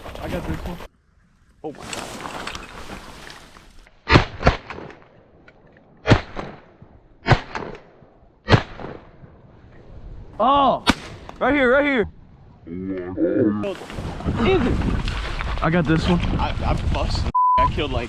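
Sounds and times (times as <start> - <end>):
shotgun shots: 4.0 - 5.0, 6.0 - 9.2, 10.8 - 11.4.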